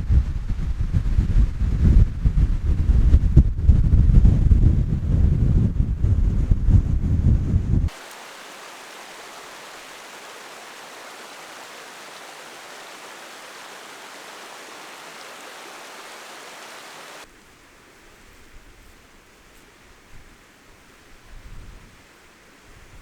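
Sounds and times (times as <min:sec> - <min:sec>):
faint low wind gusts: 0:00.0 - 0:23.0
falling water rushing: 0:07.9 - 0:17.3.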